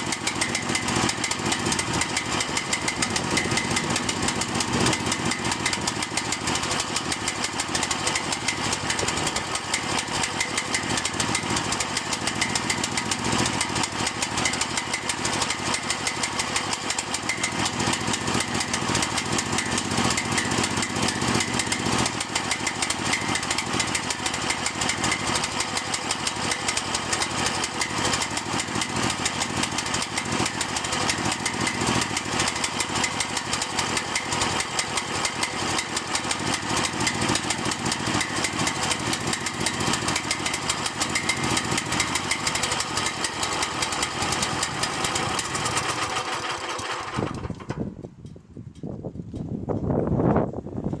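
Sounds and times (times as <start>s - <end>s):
excavator engine idling: 0.0s - 47.7s.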